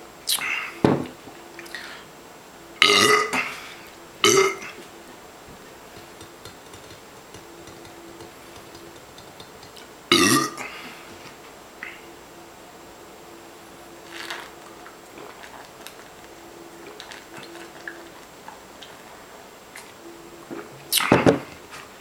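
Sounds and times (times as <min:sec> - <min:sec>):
man belching loudly: 0:02.8 - 0:03.5, 0:04.2 - 0:04.8, 0:10.1 - 0:10.7.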